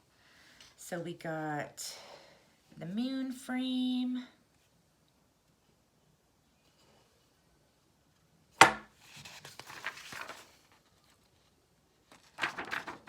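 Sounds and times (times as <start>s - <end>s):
object set down on table: 8.6s - 8.9s
rustling handling noise: 8.9s - 13.0s.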